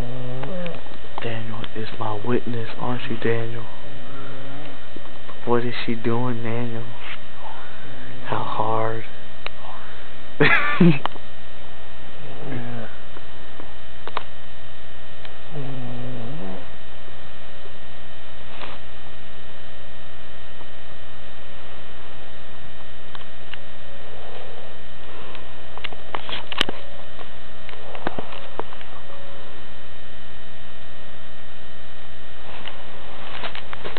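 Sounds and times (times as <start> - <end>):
steady electrical hum: 0.0 - 33.9
woman snoring: 12.3 - 13.1, 15.5 - 16.8.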